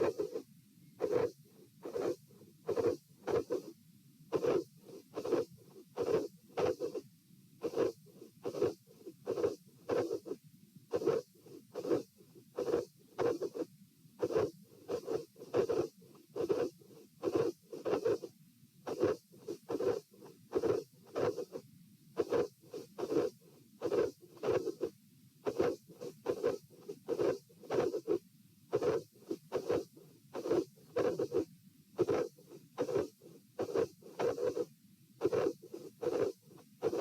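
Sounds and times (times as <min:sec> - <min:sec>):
heartbeat through stethoscope: 0:01.0 - 0:03.7, 0:04.3 - 0:07.0, 0:18.9 - 0:21.6, 0:22.2 - 0:37.0.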